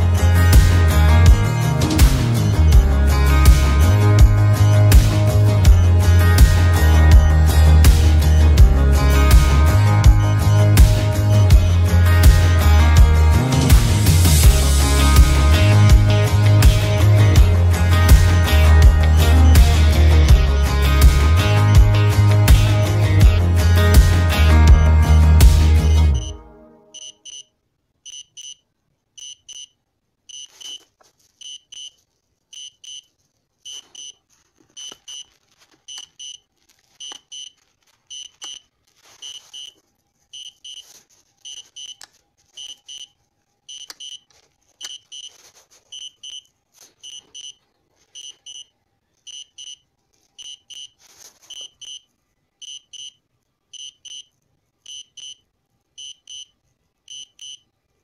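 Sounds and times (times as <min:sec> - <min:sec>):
electronic double beep: 0:26.2 - 0:26.4, 0:27.0 - 0:27.5.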